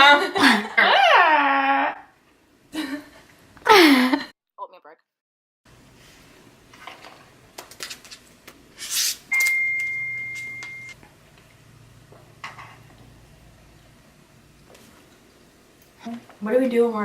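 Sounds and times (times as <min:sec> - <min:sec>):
high ringing tone: 0:09.3 - 0:11.0.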